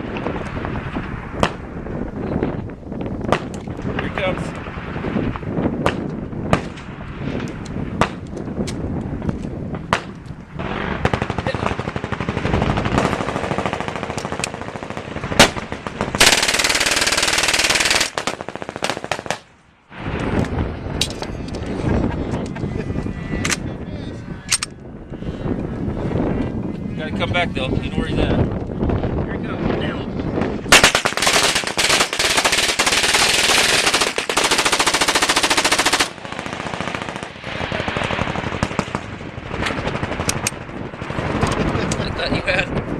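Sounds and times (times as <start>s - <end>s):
machine guns firing: 9.9s - 19.5s, 30.7s - 41.8s.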